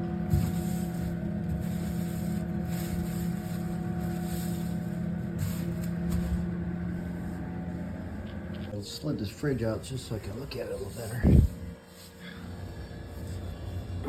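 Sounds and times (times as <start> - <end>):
refrigerator scraping along floor: 0.0 - 7.9, 9.3 - 14.0
steady low hum: 0.0 - 14.0.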